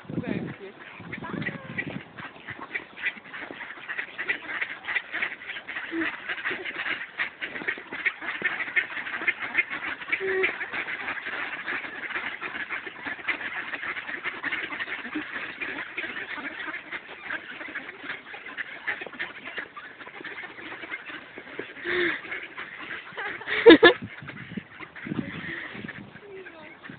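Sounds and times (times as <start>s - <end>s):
ducks quacking: 0.0s - 26.9s.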